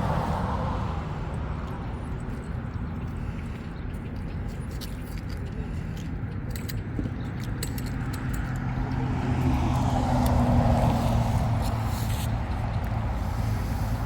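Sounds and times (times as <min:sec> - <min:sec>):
car driving past: 0:08.7 - 0:14.0.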